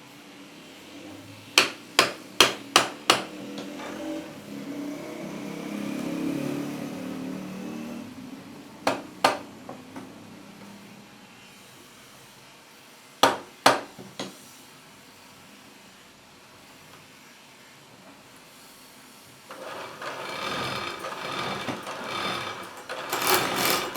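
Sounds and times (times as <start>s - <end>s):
hammer strikes: 1.6s - 3.8s, 8.9s - 9.5s.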